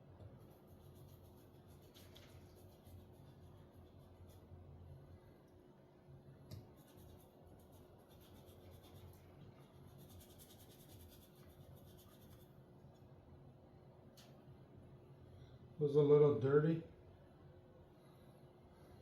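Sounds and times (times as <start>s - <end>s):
small brush scrubbing circuit board: 0.4s - 4.6s, 6.8s - 12.5s.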